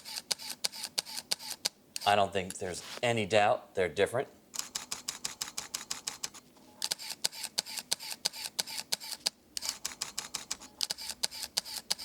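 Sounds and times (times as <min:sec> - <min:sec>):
camera shutter bursts: 0:00.0 - 0:02.1, 0:04.6 - 0:12.0.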